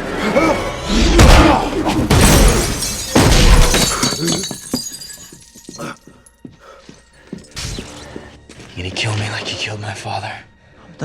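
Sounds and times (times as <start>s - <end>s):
glass shattering: 2.0s - 5.8s
debris and shards clattering: 2.1s - 5.8s.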